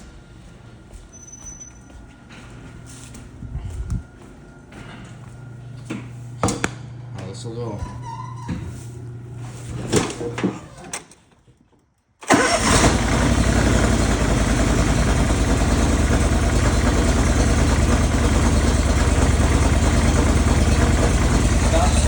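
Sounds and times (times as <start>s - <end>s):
engine starting and running: 12.2s - 22.0s.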